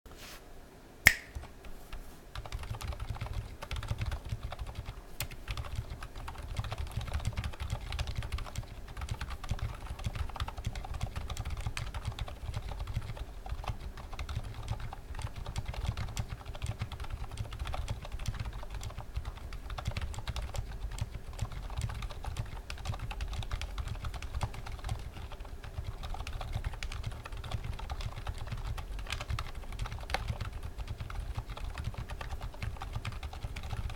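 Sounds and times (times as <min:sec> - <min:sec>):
sharp click: 0:01.0 - 0:01.5
fast mechanical keyboard typing: 0:02.3 - 0:33.9.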